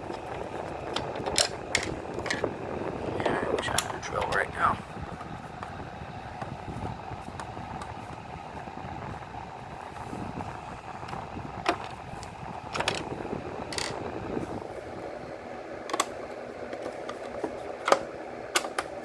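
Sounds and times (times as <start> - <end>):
room fan whirring: 0.0 - 19.0.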